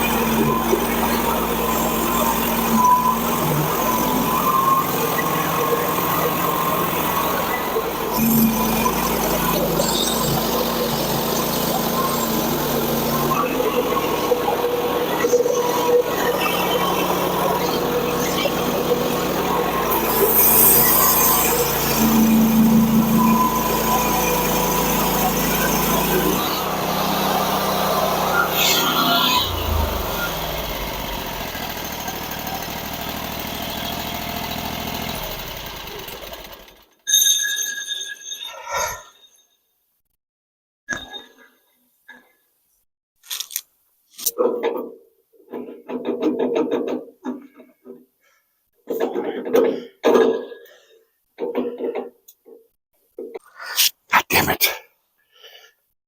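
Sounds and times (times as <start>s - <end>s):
sawmill engine running: 0.0s - 36.9s
saw blade whine: 0.0s - 37.2s.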